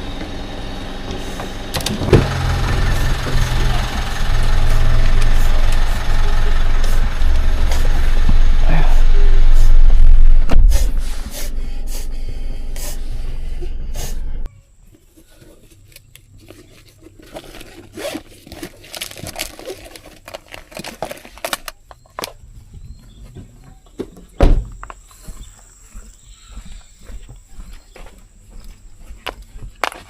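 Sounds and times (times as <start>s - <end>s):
low motor rumble: 0.0s - 14.8s
loud thump: 10.0s - 11.0s, 24.4s - 24.7s.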